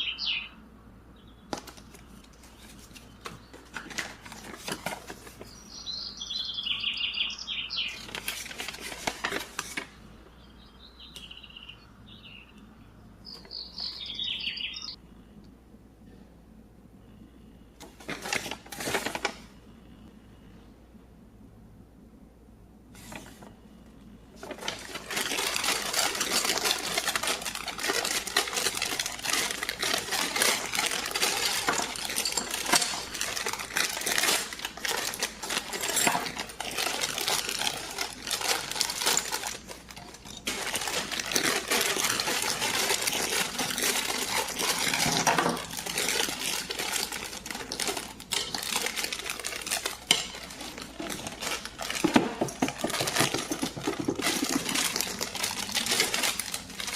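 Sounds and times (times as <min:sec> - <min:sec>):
plastic toy pieces clattering: 0:24.4 - 0:56.9.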